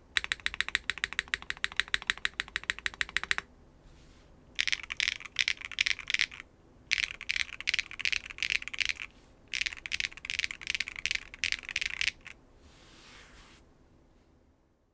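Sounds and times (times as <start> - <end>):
clacky mechanical keyboard typing: 0.1 - 3.5, 4.6 - 12.4.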